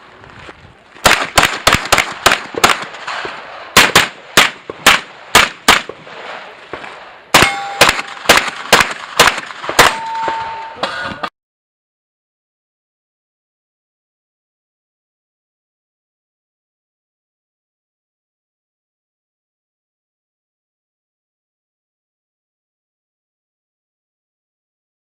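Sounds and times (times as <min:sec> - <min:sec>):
rapid pistol fire: 0:01.0 - 0:06.4, 0:07.4 - 0:10.0
steel targets ringing: 0:07.3 - 0:08.3, 0:09.8 - 0:11.3.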